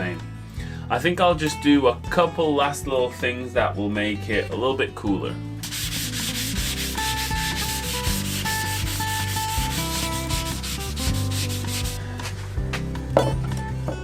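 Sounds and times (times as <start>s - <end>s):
wood being sanded: 5.6s - 12.0s
melodic music: 5.6s - 12.3s.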